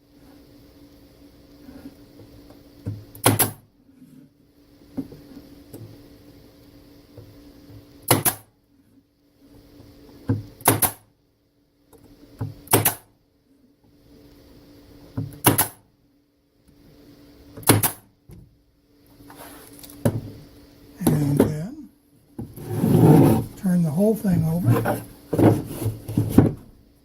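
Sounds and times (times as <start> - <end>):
staple gun firing into wood: 3.2 - 3.6, 8.1 - 8.5, 10.6 - 11.0, 12.7 - 13.1, 15.4 - 15.8, 17.6 - 18.0.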